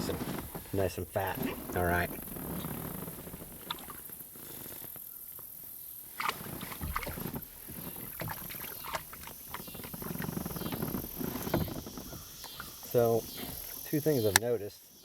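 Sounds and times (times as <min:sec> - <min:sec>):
knocks and rattles on plastic kayak: 0:00.0 - 0:14.4
water sounds: 0:06.1 - 0:14.4.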